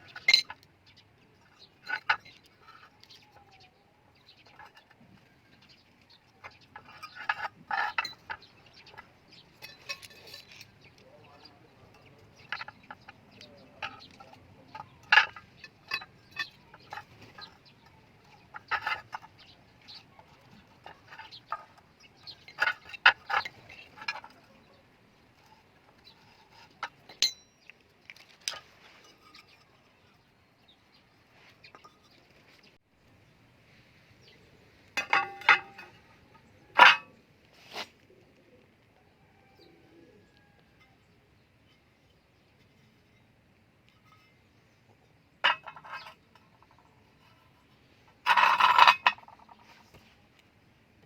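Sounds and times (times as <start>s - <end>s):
metal clinks and knocks: 6.4s - 11.0s, 11.9s - 24.6s, 25.4s - 29.9s, 35.0s - 37.1s, 45.4s - 47.5s, 48.2s - 49.6s
ringing metal clank: 27.1s - 27.7s, 35.0s - 36.0s.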